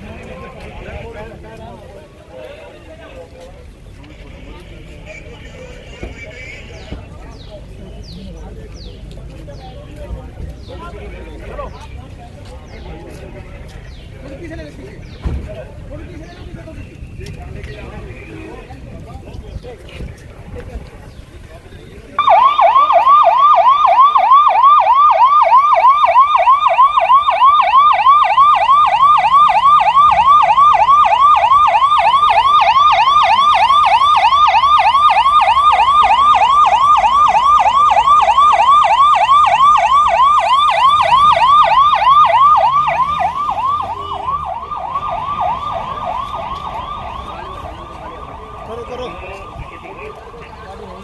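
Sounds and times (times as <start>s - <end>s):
electronic yelp siren: 22.2s - 51.0s.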